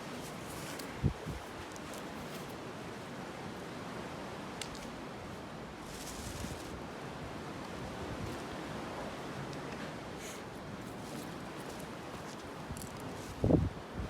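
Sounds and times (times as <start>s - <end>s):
outdoor background hiss: 0.0s - 14.0s.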